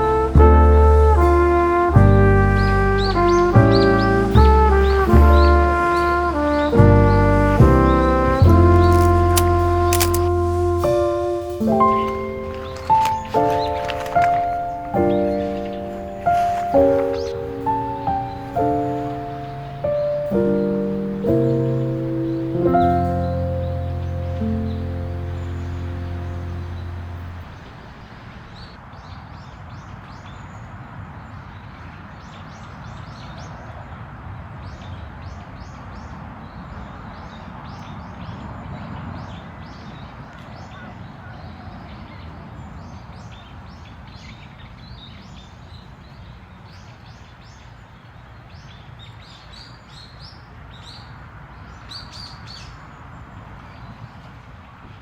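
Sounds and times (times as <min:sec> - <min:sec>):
low outdoor background rush: 0:00.0 - 0:55.0
small birds chirping: 0:02.3 - 0:28.8.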